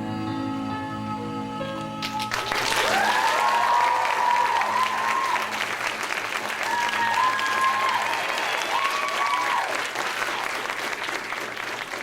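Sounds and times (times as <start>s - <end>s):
audience applauding: 2.2s - 12.0s
high cheering calls: 2.8s - 5.7s, 6.6s - 10.6s.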